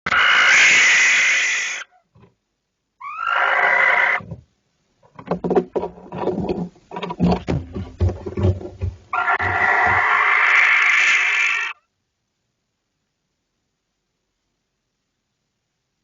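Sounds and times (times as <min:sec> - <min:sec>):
barn owl screeching: 0:00.1 - 0:02.0, 0:03.0 - 0:04.2, 0:09.1 - 0:11.9.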